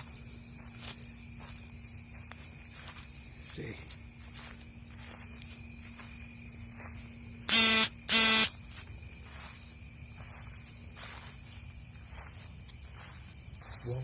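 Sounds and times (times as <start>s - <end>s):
crickets chirping: 0.0s - 14.0s
low buzzing tones: 7.5s - 8.5s.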